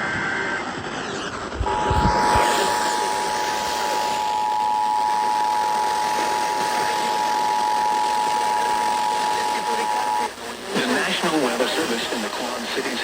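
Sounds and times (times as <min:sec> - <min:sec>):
radio hiss: 0:00.0 - 0:13.0
dual-tone emergency alert signal: 0:01.3 - 0:10.4.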